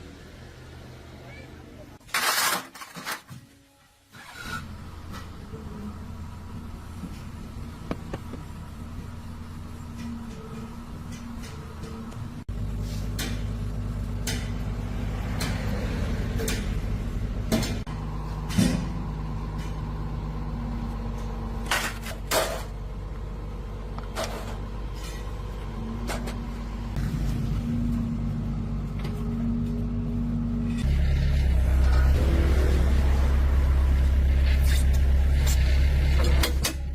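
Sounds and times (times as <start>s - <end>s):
heavy vehicle engine running: 4.2s - 36.9s
metallic knocks and clanks: 13.1s - 19.8s.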